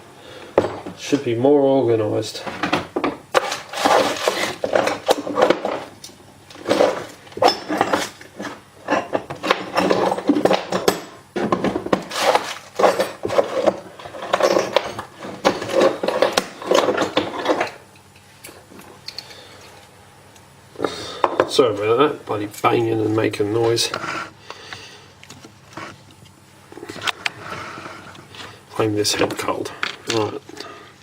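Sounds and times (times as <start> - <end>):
tools clattering and banging: 2.4 - 18.1.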